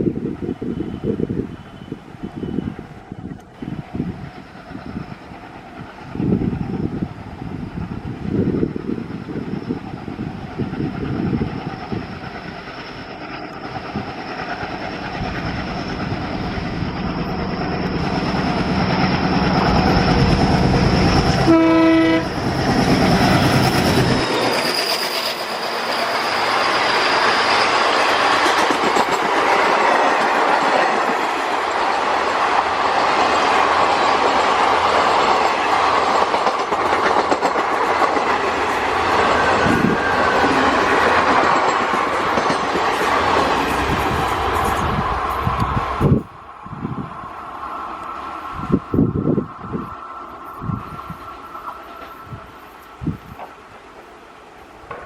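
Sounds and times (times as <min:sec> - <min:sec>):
diesel locomotive engine chugging: 0:00.7 - 0:31.0
train horn blast: 0:21.3 - 0:22.5
wheels clattering on rails: 0:22.1 - 0:46.3.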